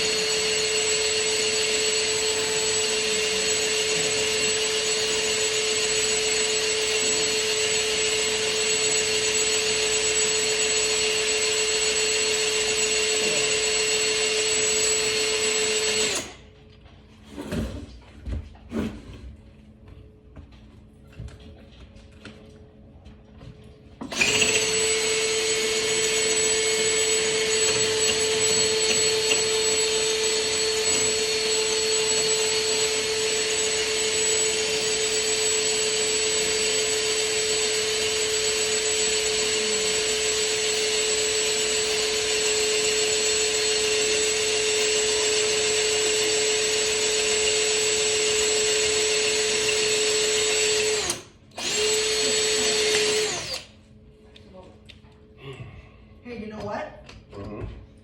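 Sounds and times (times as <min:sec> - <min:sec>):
electric drill boring into brick: 0:00.0 - 0:16.4, 0:24.0 - 0:53.7.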